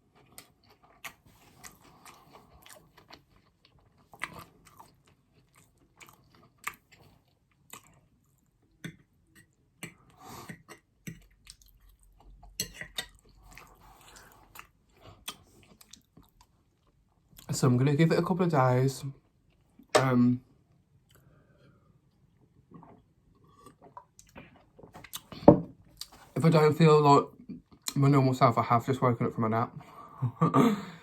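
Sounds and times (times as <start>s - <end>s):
chewing food: 0.0s - 17.5s, 22.0s - 26.3s.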